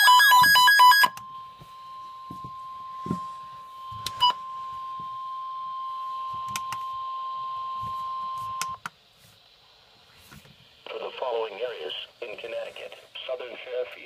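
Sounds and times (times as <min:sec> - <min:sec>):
steady alarm tone: 0:00.0 - 0:08.8.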